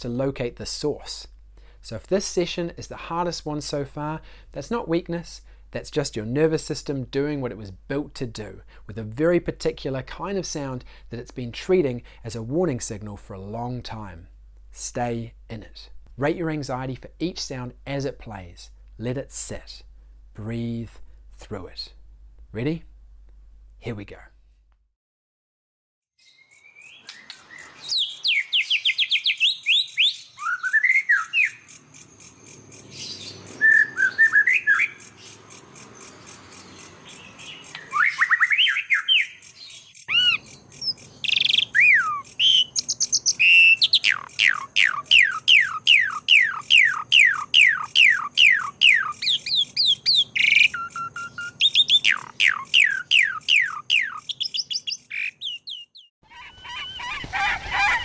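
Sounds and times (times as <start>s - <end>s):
birds whistling downward notes: 26.2s - 31.7s, 32.9s - 35.4s, 37.1s - 58.0s
bird chirps: 26.2s - 57.3s.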